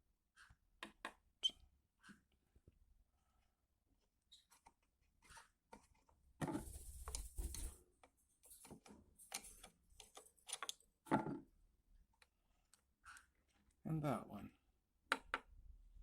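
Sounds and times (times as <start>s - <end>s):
rubbing and handling noise: 4.4s - 10.8s.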